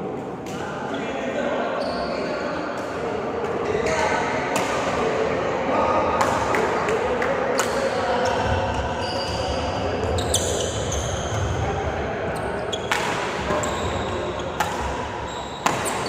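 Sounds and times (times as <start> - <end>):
high shoe squeaks: 1.8 - 2.6, 8.1 - 16.0
rackets hitting shuttlecock: 2.8 - 5.0, 12.8 - 16.0.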